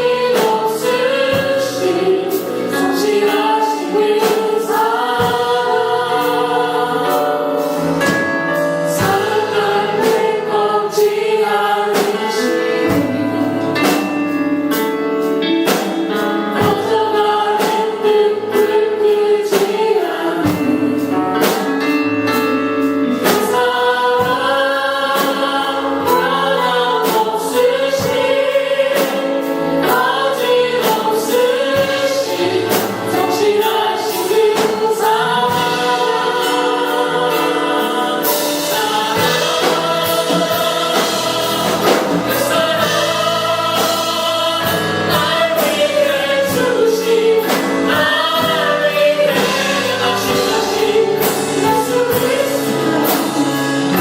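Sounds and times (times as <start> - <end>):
choir singing gospel song: 0.0 - 54.0
instrumental accompaniment with beat: 0.0 - 54.0.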